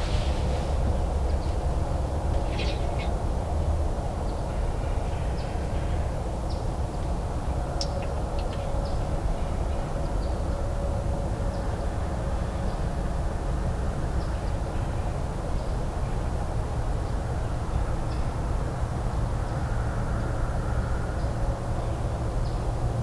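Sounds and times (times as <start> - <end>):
steady low rumble: 0.0 - 3.0.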